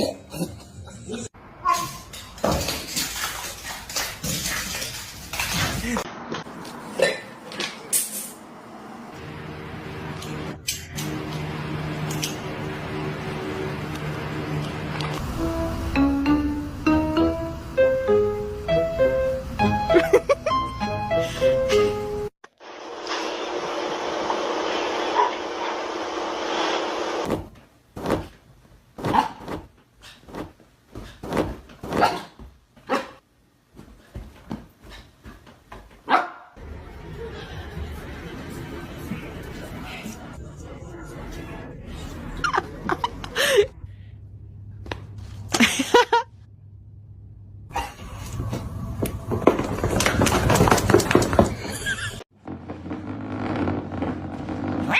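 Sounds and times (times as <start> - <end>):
dog barking: 29.0 - 29.5, 32.0 - 33.2, 36.1 - 36.6.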